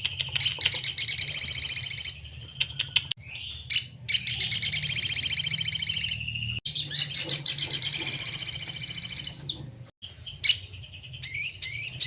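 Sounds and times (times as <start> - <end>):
bird singing high trills: 3.2 - 12.0.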